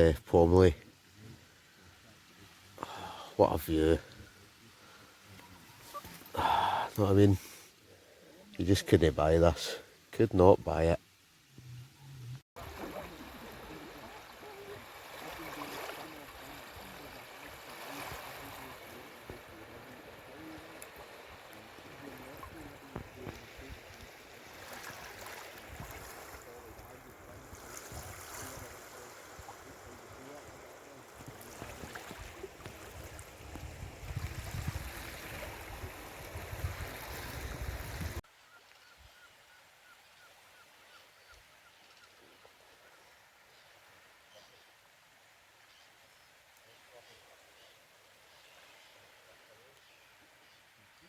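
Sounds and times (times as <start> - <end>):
small waves washing on beach: 12.6 - 38.3
wind buffeting microphone: 32.8 - 38.2.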